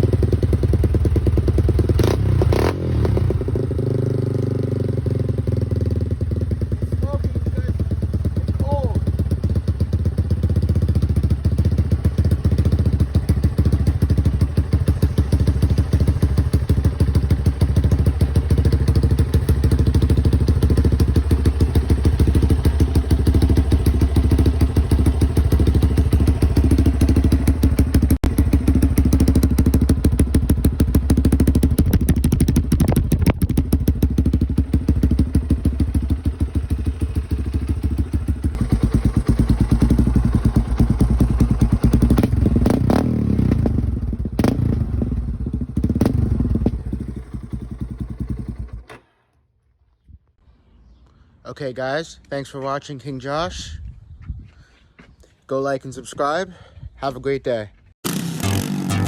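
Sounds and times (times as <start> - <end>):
quad engine running: 0.0 - 49.0, 58.0 - 59.0.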